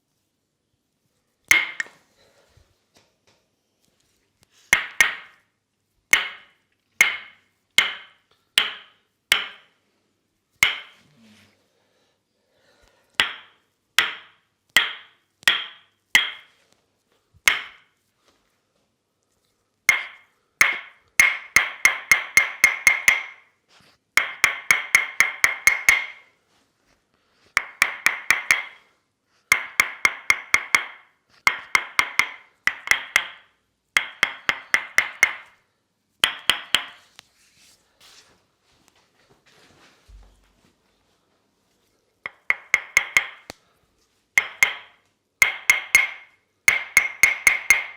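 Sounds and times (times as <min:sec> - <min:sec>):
wooden mallet tapping wooden wedge: 0:01.5 - 0:02.0, 0:04.7 - 0:05.4, 0:06.1 - 0:09.7, 0:10.6 - 0:11.0, 0:13.2 - 0:16.5, 0:17.4 - 0:17.9, 0:19.9 - 0:23.5, 0:24.2 - 0:26.3, 0:27.6 - 0:28.8, 0:29.5 - 0:35.6, 0:36.2 - 0:37.0, 0:42.3 - 0:43.6, 0:44.4 - 0:47.9.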